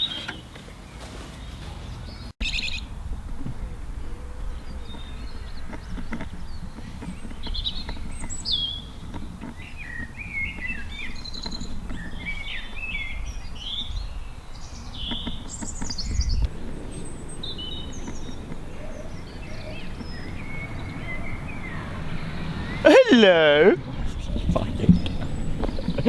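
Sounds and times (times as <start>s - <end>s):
songbirds chirping: 0.0s - 26.0s
steady low rumble: 2.4s - 9.1s, 16.0s - 22.8s, 23.8s - 26.0s.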